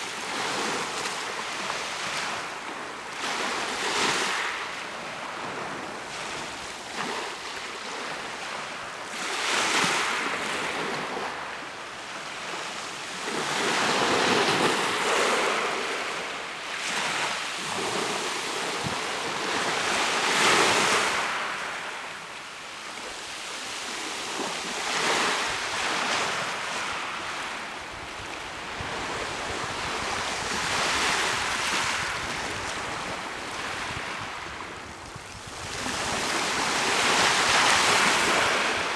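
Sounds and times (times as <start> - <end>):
sea waves breaking on shore: 23.2 - 38.9
wind on microphone: 27.8 - 38.9.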